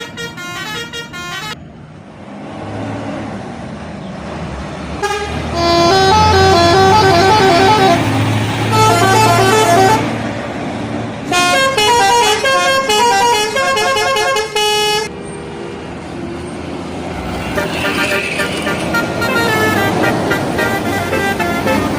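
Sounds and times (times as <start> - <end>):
bus horn playing melodies: 0.0 - 1.6, 5.0 - 10.2, 11.3 - 15.1, 17.4 - 21.9
bus engine running: 0.0 - 21.9.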